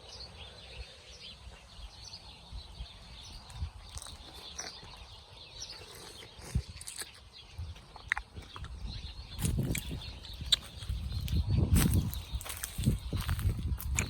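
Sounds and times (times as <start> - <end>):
small birds chirping: 0.0 - 14.0
low wind rumble: 6.5 - 14.0.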